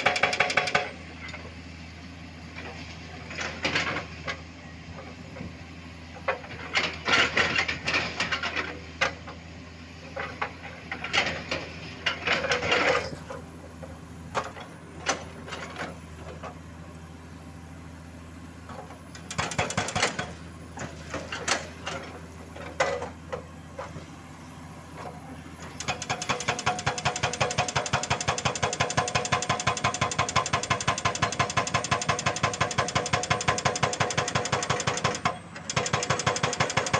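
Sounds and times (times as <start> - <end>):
hydraulic breaker hammering: 0.0 - 1.0, 19.2 - 20.4, 25.8 - 36.9
diesel engine running: 0.0 - 36.9.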